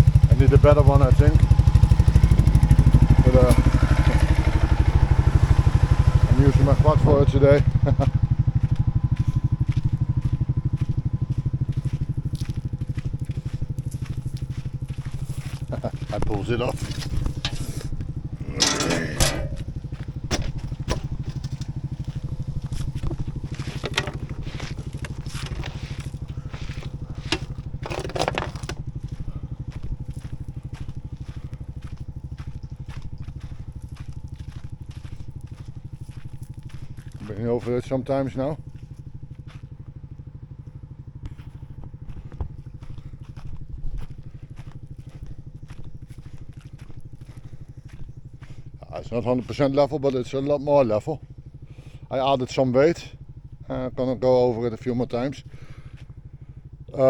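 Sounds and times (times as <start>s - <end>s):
atv engine running: 0.0s - 57.0s.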